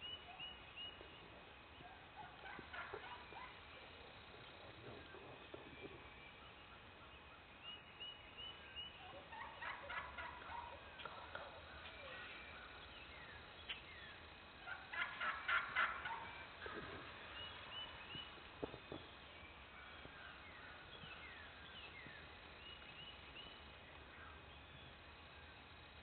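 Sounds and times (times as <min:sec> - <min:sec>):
small birds chirping: 0:00.0 - 0:26.0
turkey gobbling: 0:01.8 - 0:05.2, 0:08.8 - 0:13.0, 0:14.6 - 0:18.3.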